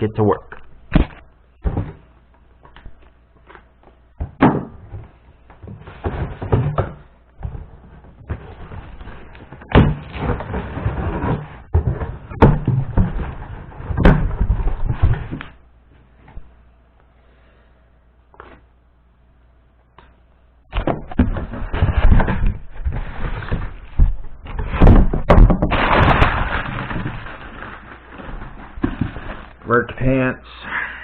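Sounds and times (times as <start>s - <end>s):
box knocks and thumps: 0.9s - 2.0s, 4.2s - 15.4s, 20.7s - 29.5s
packaging rustling and crinkling: 25.6s - 29.7s.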